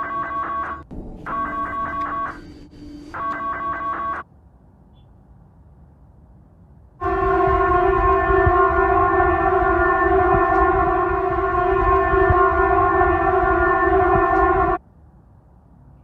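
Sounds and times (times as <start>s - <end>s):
buzzy electronic alarm tone: 0.0s - 4.2s, 7.0s - 14.8s
low rumbling hiss: 0.9s - 3.2s.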